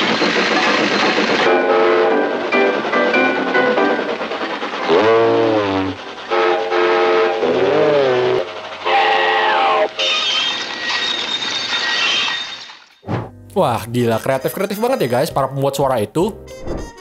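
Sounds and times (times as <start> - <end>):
train whistle chords: 1.4 - 4.2, 4.8 - 10.6.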